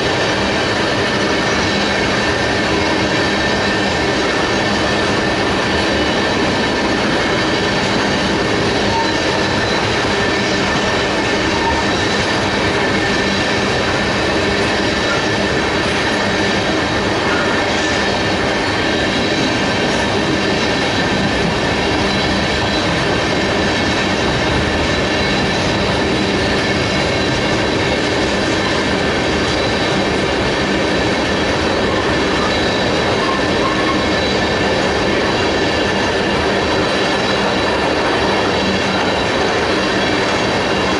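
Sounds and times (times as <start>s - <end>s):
freight train rumbling past: 0.0s - 40.9s
high-pitched wheel squeal: 7.4s - 12.4s, 31.9s - 37.7s.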